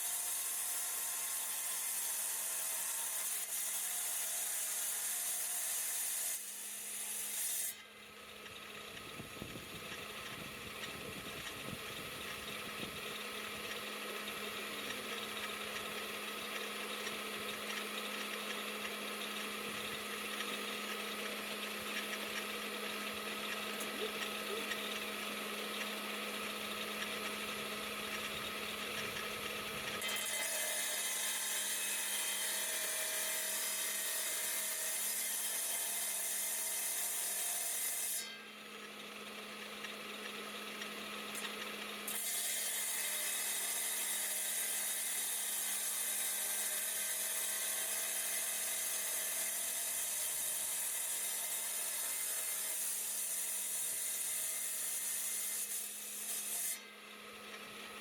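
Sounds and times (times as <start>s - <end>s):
rock saw motor hum: 8.0s - 30.7s.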